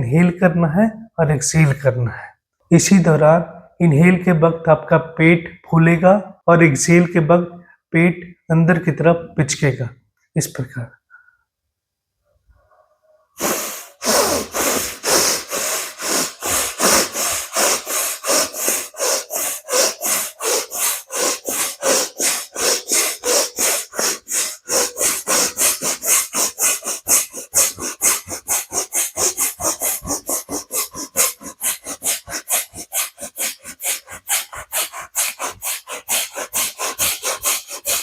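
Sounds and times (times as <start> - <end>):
person breathing forcefully through nose: 12.7 - 38.0.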